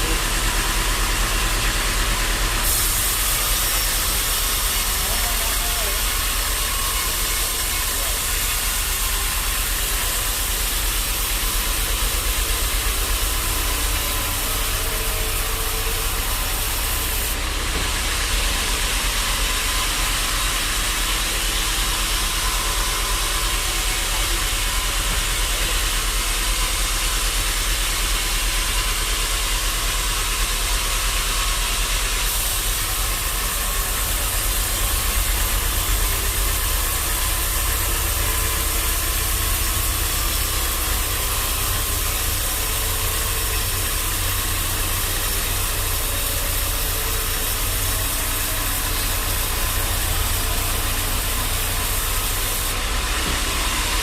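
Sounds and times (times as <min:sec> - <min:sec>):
loud high hiss: 0:01.8 - 0:24.6, 0:31.6 - 0:54.0.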